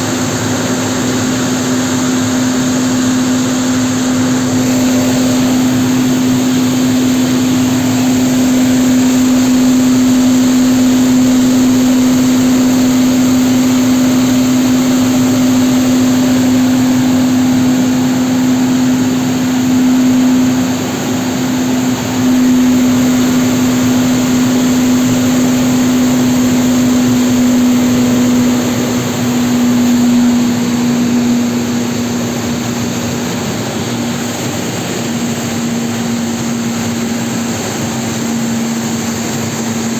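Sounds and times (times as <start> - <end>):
industrial blowers humming: 0.0 - 39.9
rushing air: 2.6 - 31.7.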